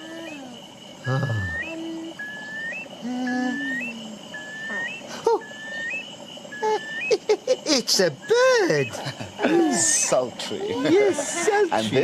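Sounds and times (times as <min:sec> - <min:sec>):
lower animal calls: 0:00.0 - 0:11.5
steady high tone: 0:00.0 - 0:12.0
bird call rising whistle: 0:01.0 - 0:07.2.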